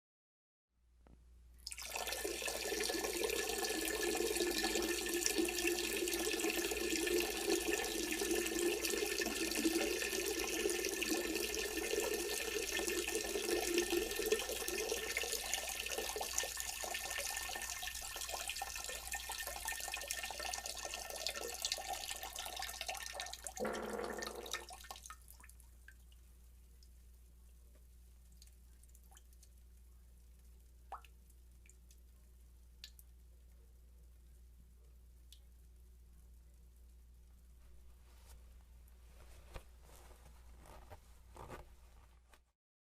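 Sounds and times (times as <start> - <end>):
urine stream splashing into toilet: 1.6 - 25.3
brief low sound: 23.6 - 24.6.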